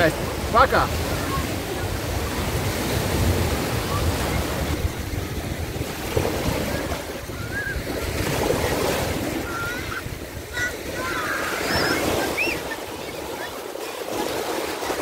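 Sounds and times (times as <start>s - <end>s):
sea surf washing onto beach: 0.0s - 15.0s
wind on microphone: 0.0s - 15.0s.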